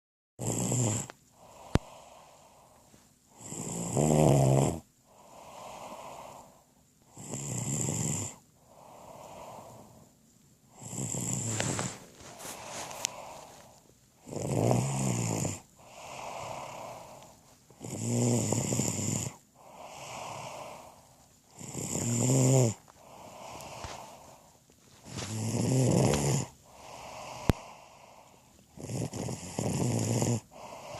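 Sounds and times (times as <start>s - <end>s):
buzzy rattling snores: 0.4s - 10.1s, 10.7s - 30.9s
breathy breath: 1.3s - 3.1s, 5.0s - 6.8s, 8.6s - 10.2s, 11.4s - 14.0s, 15.6s - 17.8s, 19.3s - 25.5s, 26.1s - 28.7s, 30.4s - 30.9s.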